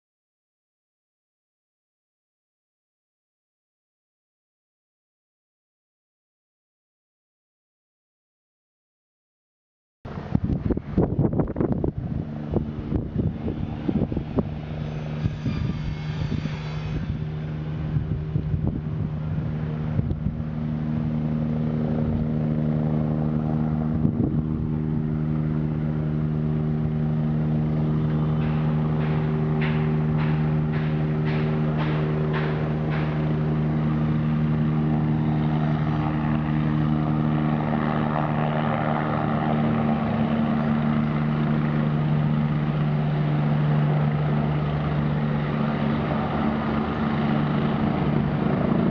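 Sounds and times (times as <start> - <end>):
helicopter engine and rotor hum: 10.1 - 48.9
wind buffeting microphone: 10.1 - 48.9.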